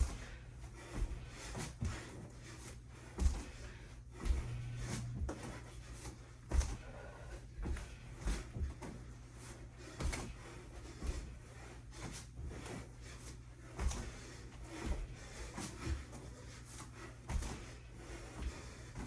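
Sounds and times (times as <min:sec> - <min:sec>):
hard breathing: 0:00.0 - 0:19.0
thuds on the floor: 0:17.3 - 0:17.7.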